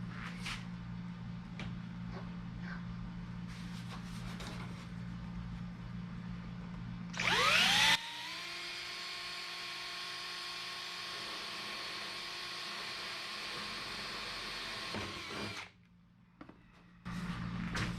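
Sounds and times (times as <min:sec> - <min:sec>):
steady low hum: 0:00.0 - 0:08.0
power tool motor whine: 0:07.2 - 0:15.7.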